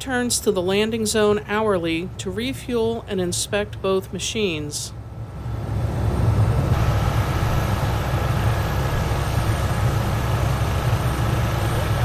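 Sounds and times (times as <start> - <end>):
helicopter engine and rotor: 5.4 - 12.0.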